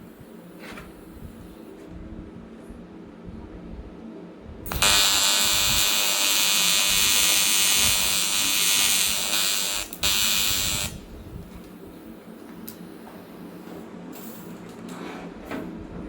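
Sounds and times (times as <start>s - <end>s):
welding arc buzzing: 4.7s - 11.5s.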